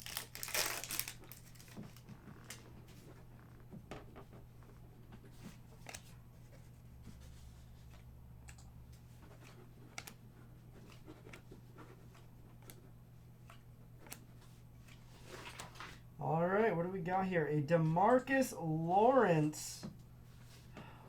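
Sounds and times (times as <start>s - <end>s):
trading cards clicking and rustling: 0.0s - 3.1s, 5.2s - 16.0s.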